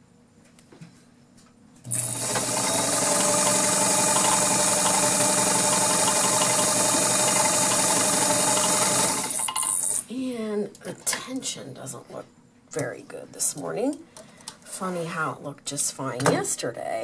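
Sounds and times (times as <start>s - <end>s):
sewing machine sewing: 1.9s - 10.0s.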